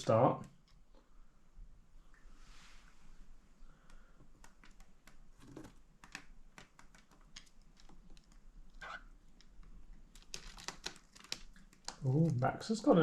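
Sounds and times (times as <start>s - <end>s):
claws tapping and scratching cardboard: 4.2s - 12.4s.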